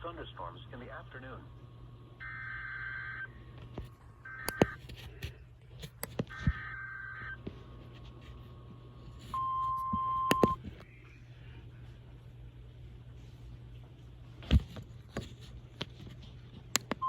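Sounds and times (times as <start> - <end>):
radio static crackles: 2.2 - 9.4.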